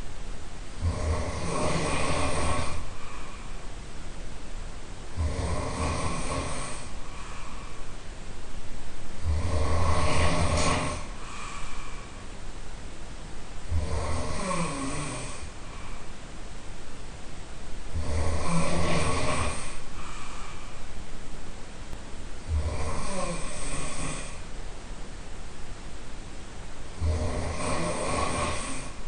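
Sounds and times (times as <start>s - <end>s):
person snoring loudly: 0.8s - 3.0s, 5.1s - 7.0s, 9.2s - 11.3s, 13.7s - 15.6s, 17.9s - 19.8s, 22.4s - 24.5s, 27.0s - 29.0s.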